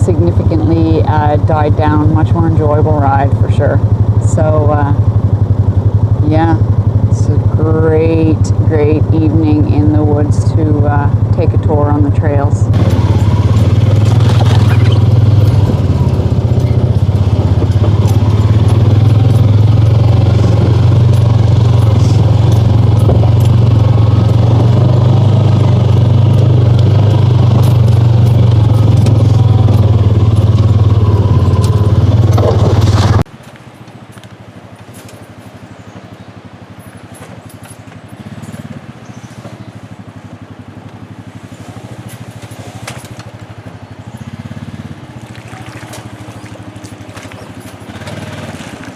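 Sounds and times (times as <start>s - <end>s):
faint low rumbling: 0.0s - 33.3s
vehicle engine droning: 0.0s - 48.9s.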